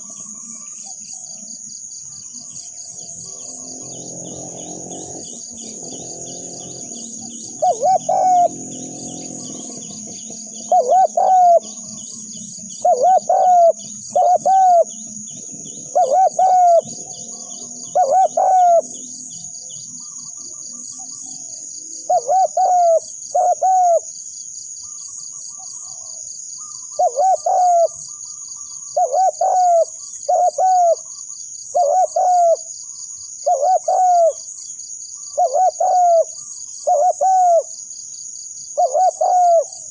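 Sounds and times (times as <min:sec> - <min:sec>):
dove cooing: 0:02.4 - 0:19.2, 0:22.1 - 0:24.1, 0:25.7 - 0:28.2, 0:28.8 - 0:31.1, 0:31.7 - 0:32.7, 0:33.4 - 0:34.4, 0:35.4 - 0:37.7, 0:38.8 - 0:39.9.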